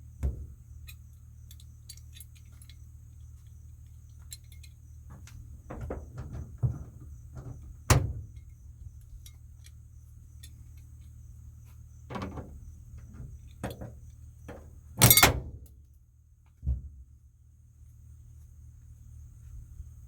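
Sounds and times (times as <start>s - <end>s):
dull thump: 0.2s - 0.6s, 16.6s - 17.0s.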